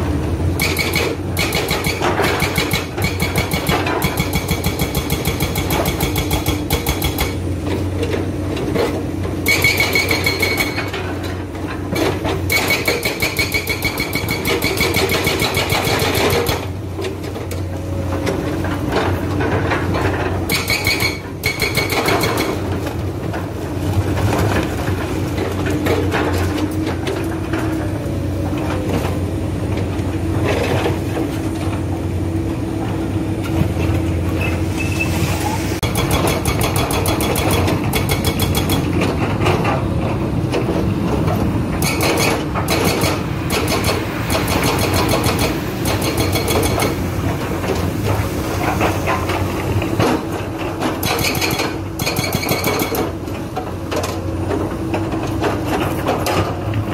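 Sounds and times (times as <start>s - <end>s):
hydraulic breaker hammering: 0.6s - 7.4s, 11.9s - 16.8s, 20.5s - 22.8s, 35.8s - 39.8s, 41.7s - 47.0s, 50.8s - 53.2s.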